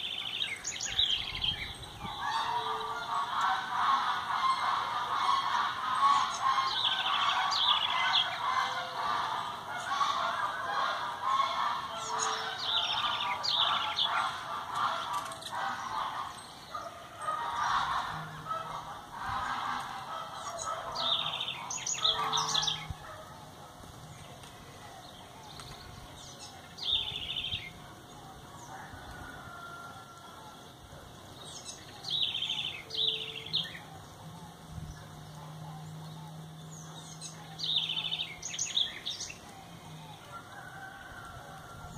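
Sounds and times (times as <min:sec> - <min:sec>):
flock of songbirds singing: 0:00.0 - 0:41.9
songbird high trills: 0:31.5 - 0:34.0.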